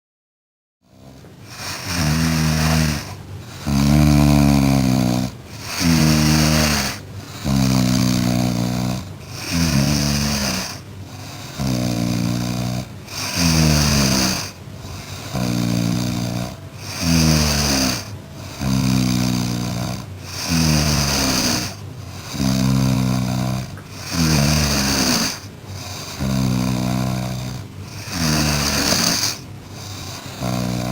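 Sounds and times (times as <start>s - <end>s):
cat snoring: 0.9s - 30.9s
hissy breath: 1.1s - 30.9s.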